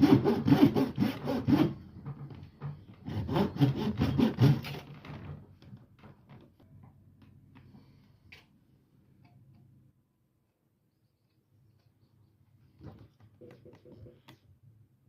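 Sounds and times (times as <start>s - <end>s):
handsaw cutting wood: 0.0s - 1.8s, 3.0s - 4.9s.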